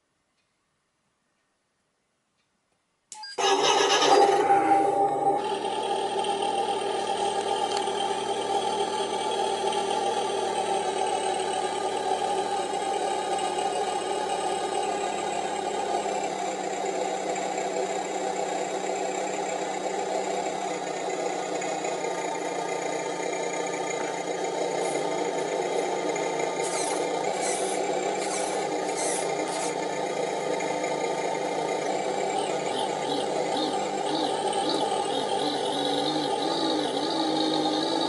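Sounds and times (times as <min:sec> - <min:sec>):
diesel engine idling from small speaker: 0:03.7 - 0:38.0
short high hissing bursts: 0:26.6 - 0:29.8.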